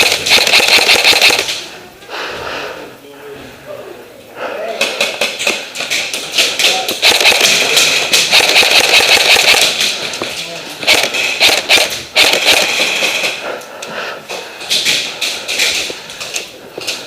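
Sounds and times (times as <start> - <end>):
airsoft guns firing in bursts: 0.0 - 1.6, 4.8 - 13.4.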